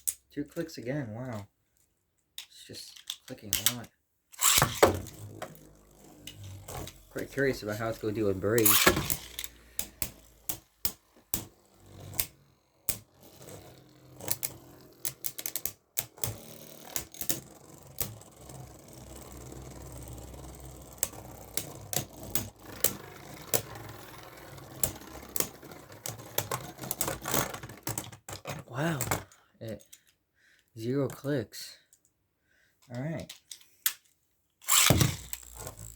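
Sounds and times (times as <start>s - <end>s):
spinning whir: 4.4s - 27.8s, 34.7s - 35.9s
spinning tops clicking and clacking: 4.4s - 28.2s, 34.6s - 35.9s.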